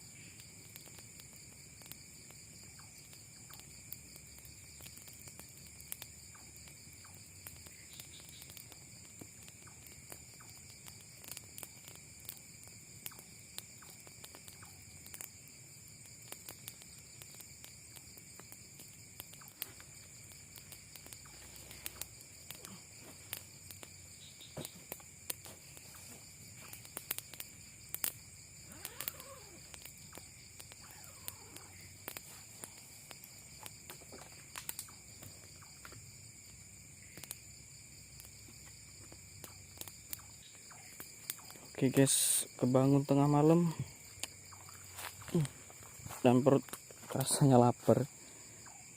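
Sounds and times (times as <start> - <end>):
crickets trilling: 0.0 - 48.9
small clicks and rustles: 0.4 - 15.4, 16.0 - 36.5.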